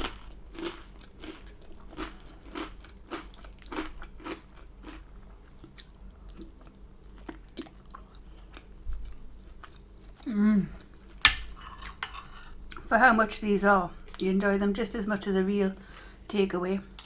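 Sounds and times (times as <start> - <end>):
person chewing food: 0.0 - 12.9.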